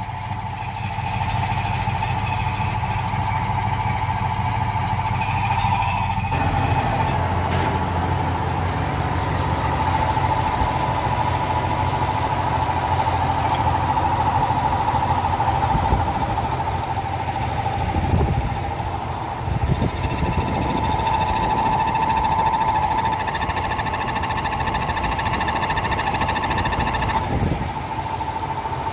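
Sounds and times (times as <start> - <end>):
truck engine idling: 0.0 - 28.9
high-pitched engine squeal: 0.4 - 7.5, 19.4 - 27.7.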